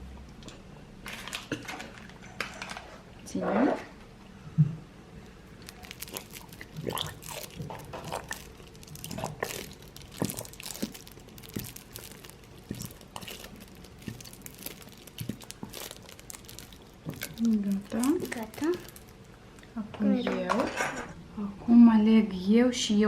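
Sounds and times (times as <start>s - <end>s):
container crackling and crinkling: 5.6s - 19.3s.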